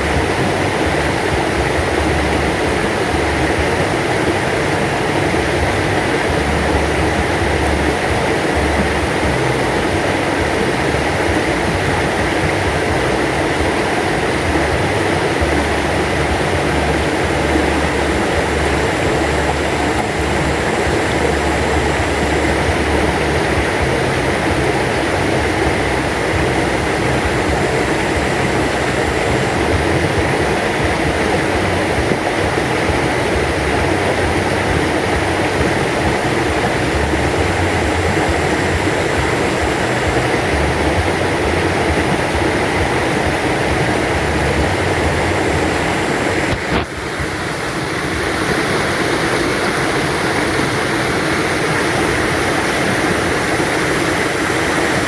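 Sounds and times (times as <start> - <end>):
river water rushing: 0.0 - 55.0.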